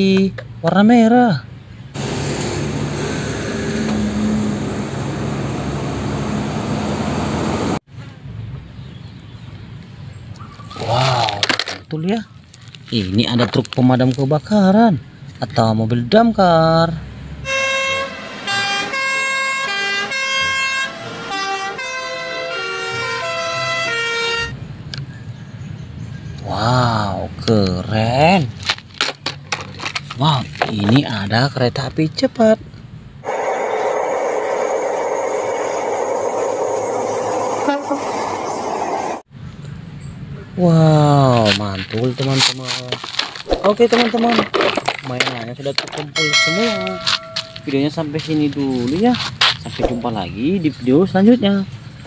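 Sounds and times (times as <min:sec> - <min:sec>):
engine-like rushing noise: 0:02.0 - 0:08.5, 0:33.2 - 0:39.3.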